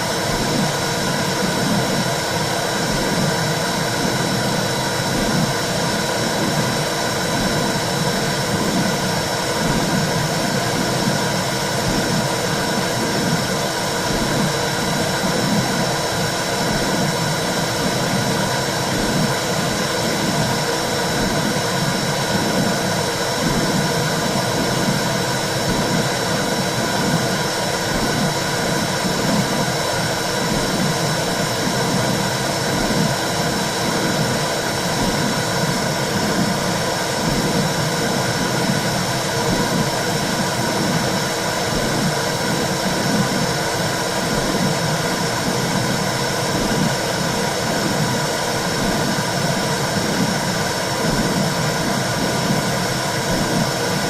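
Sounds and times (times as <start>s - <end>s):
low heartbeat pulse: 21.2s - 29.8s.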